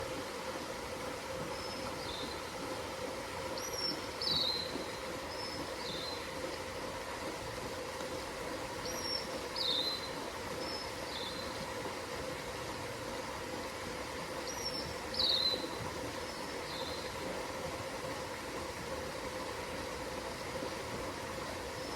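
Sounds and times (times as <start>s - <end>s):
water rushing: 0.0s - 21.9s.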